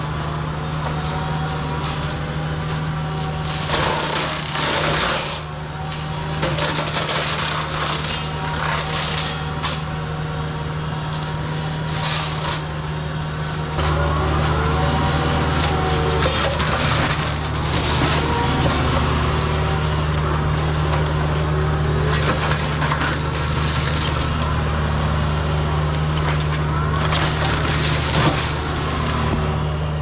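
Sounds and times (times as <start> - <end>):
diesel engine running: 0.0 - 30.0
flail mower crunching wood: 0.7 - 30.0.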